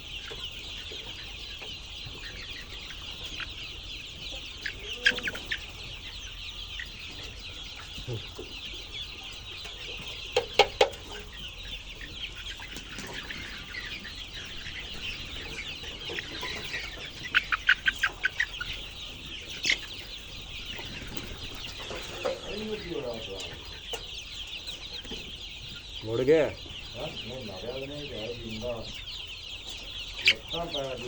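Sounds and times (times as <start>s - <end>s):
chicks peeping: 0.0s - 31.0s.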